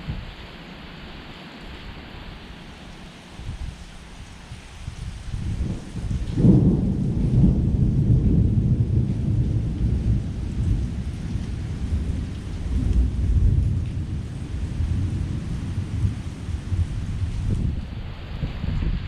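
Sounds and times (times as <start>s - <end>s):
heavy rain falling: 0.0s - 19.0s
thunder rumbling and clapping: 5.3s - 19.0s.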